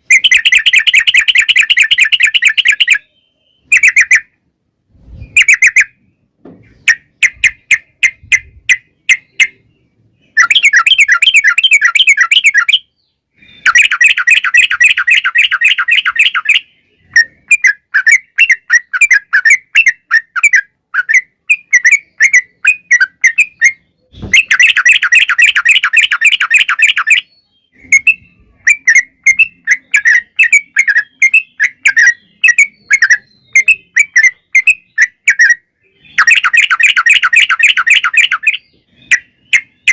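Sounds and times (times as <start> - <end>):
bird rattling trills and chattering: 13.6 - 16.6, 17.2 - 27.2, 36.1 - 39.9.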